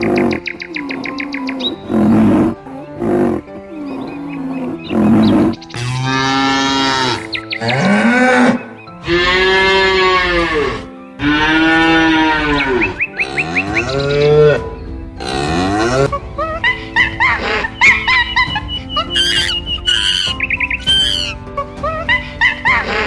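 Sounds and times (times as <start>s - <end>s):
cattle mooing: 1.7s - 16.1s
quick high chirps: 16.6s - 21.4s.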